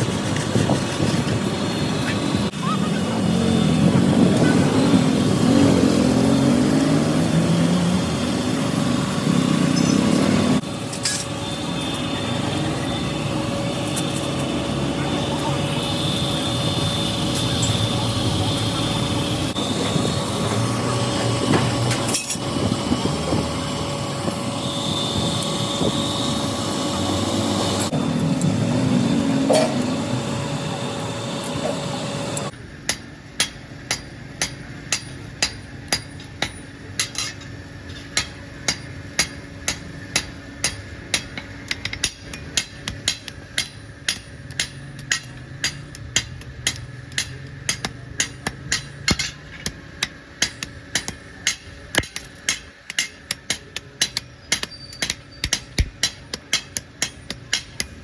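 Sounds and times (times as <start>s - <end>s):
workshop machine whine: 0.0s - 58.0s
hammer ringing on metal: 42.0s - 58.0s.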